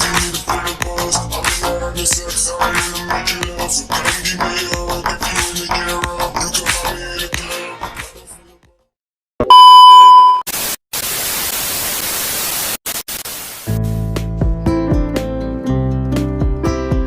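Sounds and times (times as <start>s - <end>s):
loud electronic beep: 9.4s - 10.4s
static hiss: 10.6s - 13.7s.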